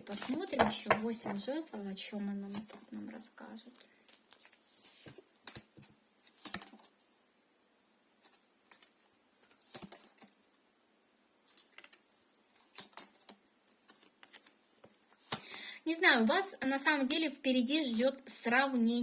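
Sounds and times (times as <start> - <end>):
cards clicking and tapping on table: 0.5 - 1.4.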